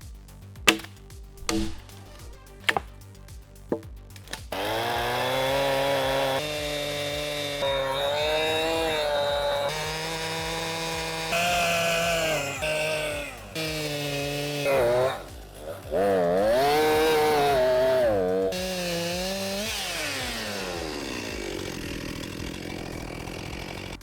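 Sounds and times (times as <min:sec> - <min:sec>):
chainsaw cutting wood: 0:00.4 - 0:24.0
sharp knocks: 0:00.6 - 0:02.0.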